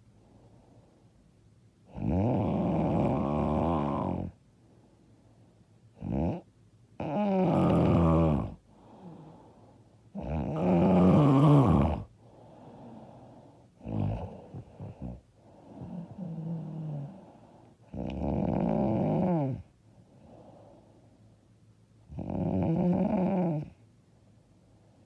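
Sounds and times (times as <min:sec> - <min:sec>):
quiet breaths: 0:00.0 - 0:25.0
woman snoring loudly: 0:01.9 - 0:04.3, 0:07.0 - 0:09.3, 0:10.2 - 0:12.1, 0:13.8 - 0:15.2, 0:15.8 - 0:17.2, 0:17.9 - 0:19.6, 0:22.1 - 0:23.7.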